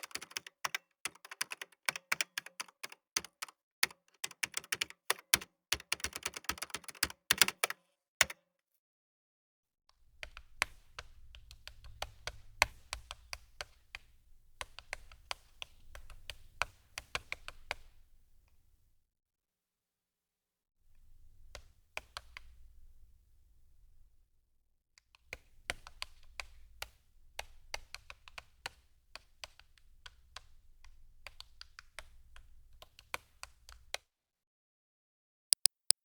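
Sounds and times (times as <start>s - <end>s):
computer keyboard typing: 0.0s - 8.4s.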